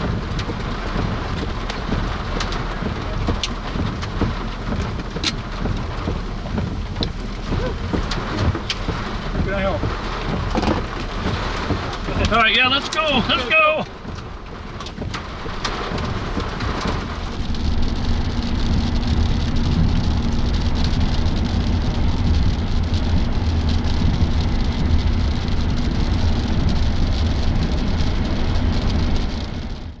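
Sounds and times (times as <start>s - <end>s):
heavy rain on a vehicle: 0.0s - 30.0s
low vehicle hum: 0.0s - 30.0s
knocks: 0.1s - 17.2s.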